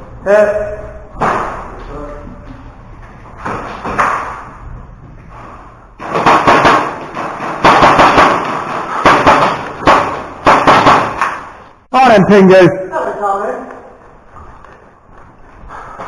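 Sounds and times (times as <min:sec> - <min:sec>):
airsoft guns firing: 0:06.0 - 0:11.5.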